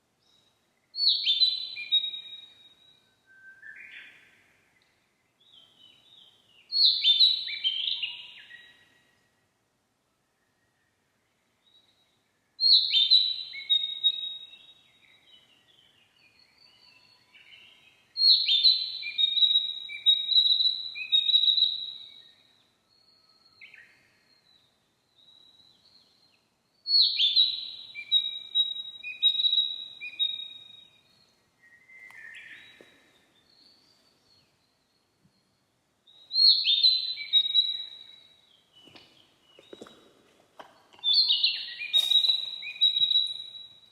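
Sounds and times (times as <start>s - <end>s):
flycatcher singing: 40.9s - 43.9s.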